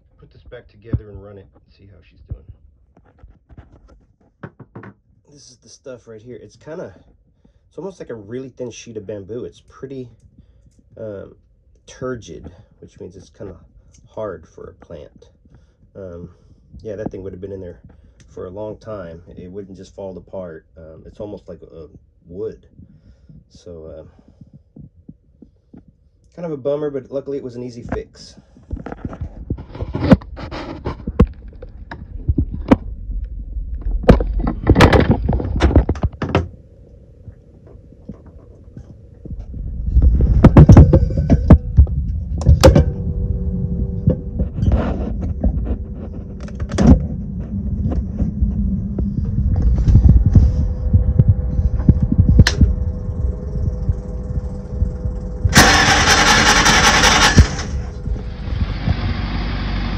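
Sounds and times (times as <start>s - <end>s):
boat engine running: 37.8s - 59.9s
loud burst of noise: 39.7s - 59.9s.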